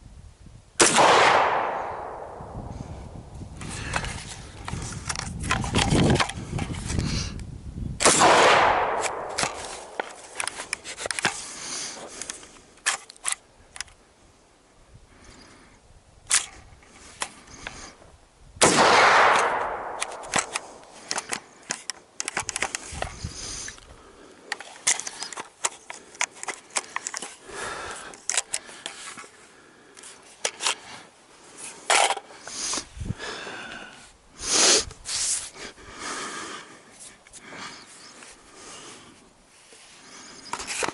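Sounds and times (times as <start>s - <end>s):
rifle shot: 0.8s - 2.6s, 8.0s - 10.3s, 18.6s - 20.9s.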